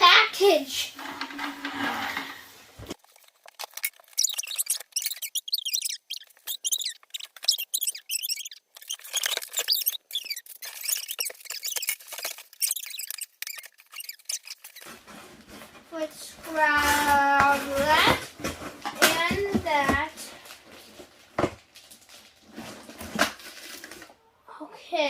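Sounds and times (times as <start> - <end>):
tape squeaking and crinkling: 1.0 - 24.2.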